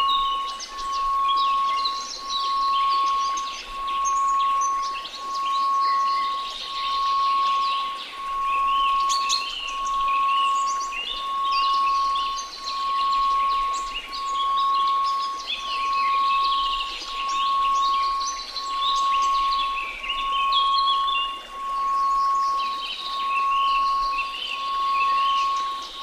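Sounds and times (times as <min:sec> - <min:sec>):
high chirping and twittering: 0:00.0 - 0:26.0
pulsing sine tone: 0:00.0 - 0:26.0
soft noise hiss: 0:00.0 - 0:26.0.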